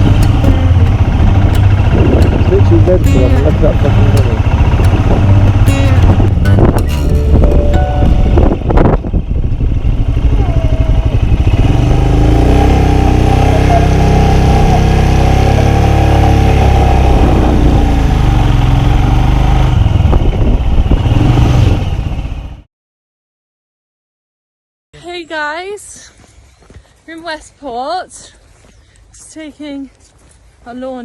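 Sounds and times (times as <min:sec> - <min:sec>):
motorcycle engine running: 0:00.0 - 0:22.7.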